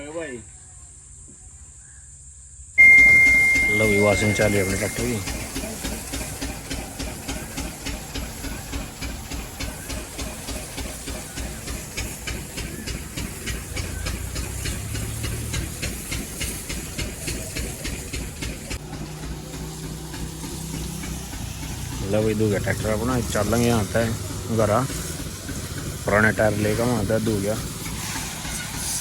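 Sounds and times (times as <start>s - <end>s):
pressure washer spraying: 2.8s - 29.0s.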